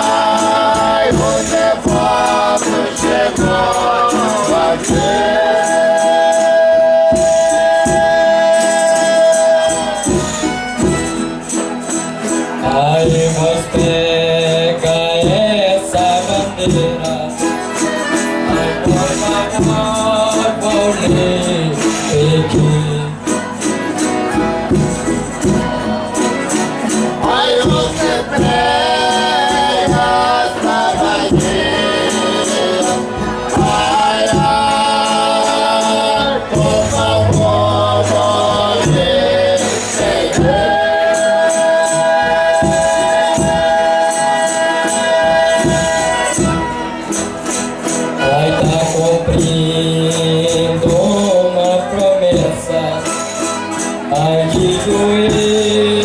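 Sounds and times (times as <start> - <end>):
tambourine shaken and struck: 0.0 - 56.0
group of voices chanting: 27.2 - 41.4.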